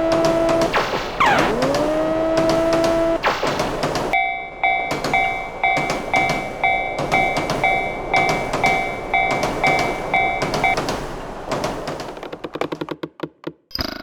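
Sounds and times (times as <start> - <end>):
train wheels clacking on rails: 0.0 - 13.3
crossing warning bell ringing: 4.1 - 10.8.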